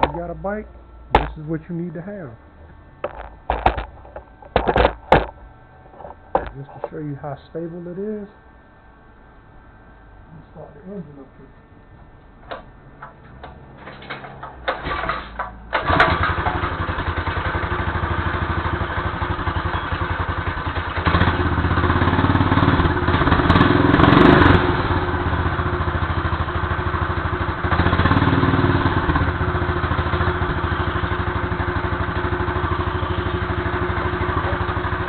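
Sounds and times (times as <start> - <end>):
small engine running and revving: 15.8 - 35.0.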